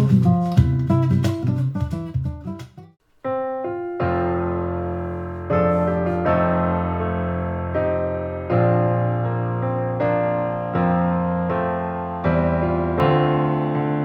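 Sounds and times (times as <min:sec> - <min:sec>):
guitar piece: 0:00.0 - 0:14.0
piano sustained chords: 0:03.7 - 0:14.0.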